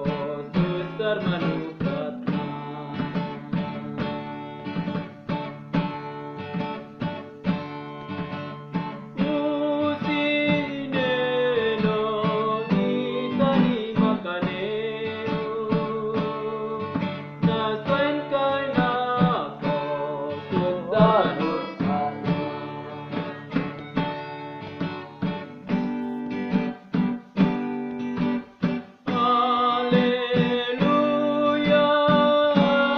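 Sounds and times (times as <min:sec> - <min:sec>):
person singing: 0:00.0 - 0:04.5, 0:09.0 - 0:25.4, 0:28.2 - 0:32.9
acoustic guitar strumming: 0:00.0 - 0:32.9.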